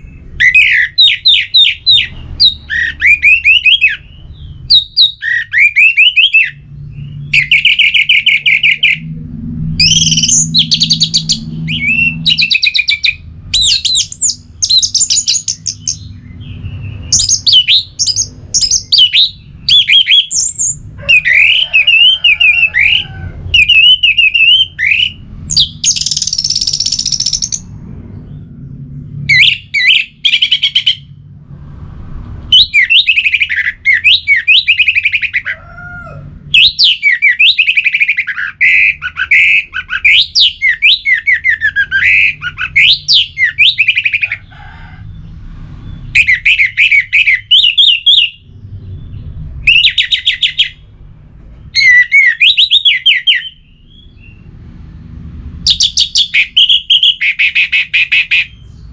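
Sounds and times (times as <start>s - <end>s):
low rumble: 6.6s - 19.7s, 22.9s - 32.5s.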